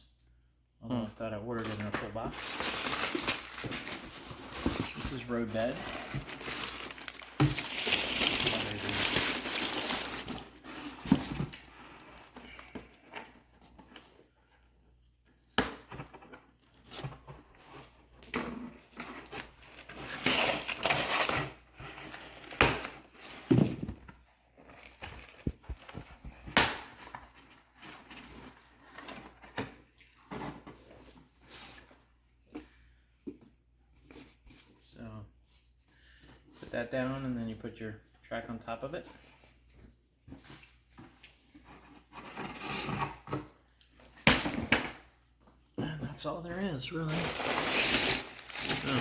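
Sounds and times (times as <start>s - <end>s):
packaging rustling and crinkling: 1.6s - 14.3s, 18.7s - 32.0s, 46.8s - 49.0s.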